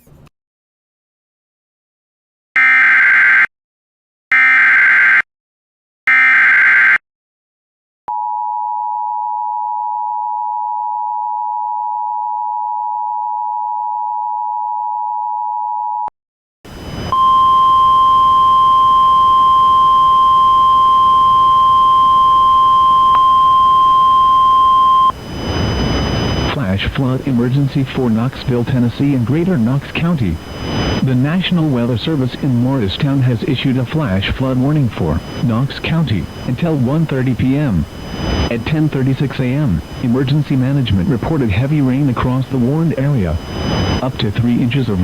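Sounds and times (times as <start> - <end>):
radio hiss: 16.7 - 17.2, 25.0 - 45.0
data bursts: 16.7 - 45.0
steady warning tone: 16.7 - 45.0
two-tone attention signal: 16.9 - 26.6.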